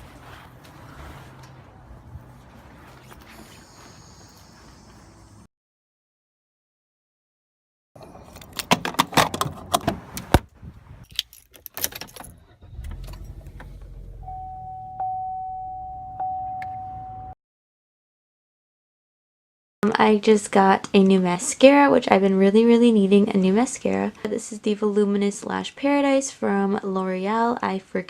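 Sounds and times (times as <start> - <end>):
low car rumble: 0.0 - 5.5, 12.0 - 17.3
keys jangling and clicking: 11.1 - 12.5
car warning chime: 14.2 - 17.4.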